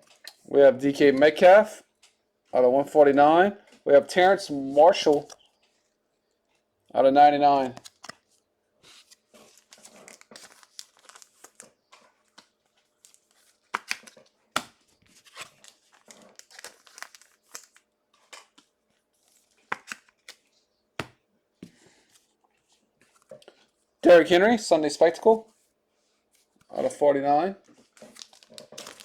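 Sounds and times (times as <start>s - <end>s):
plastic packaging crinkling: 7.6s - 20.5s, 27.6s - 29.0s.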